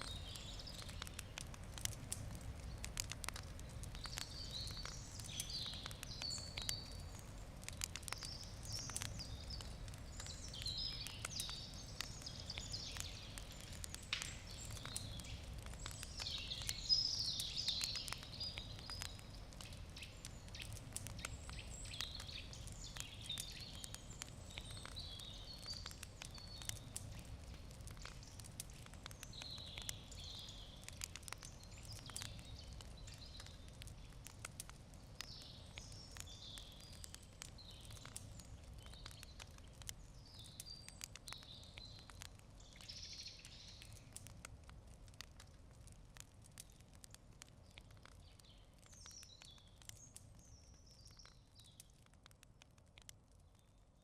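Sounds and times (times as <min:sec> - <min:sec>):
campfire crackling: 0:00.0 - 0:54.0
birds chirping: 0:02.6 - 0:34.2.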